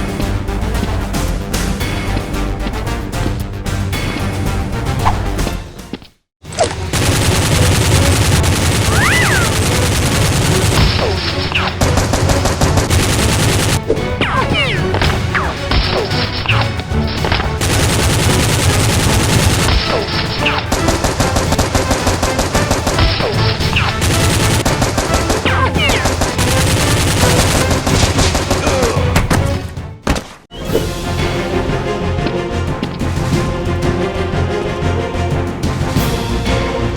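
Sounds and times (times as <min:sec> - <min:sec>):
music: 0:00.0 - 0:36.9
machine-gun fire: 0:06.9 - 0:13.8, 0:17.2 - 0:29.3.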